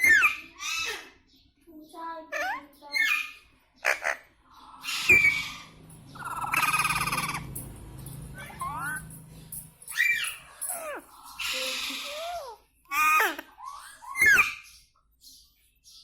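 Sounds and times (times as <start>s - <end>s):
parakeet squawking and whistling: 4.8s - 7.6s, 8.4s - 9.1s, 9.9s - 14.7s.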